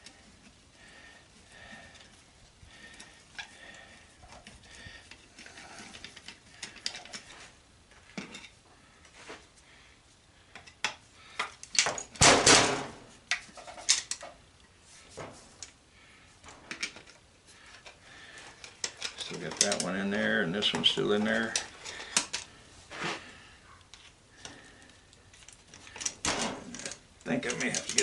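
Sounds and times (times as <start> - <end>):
screwdriver clicking and scraping: 25.3 - 28.0.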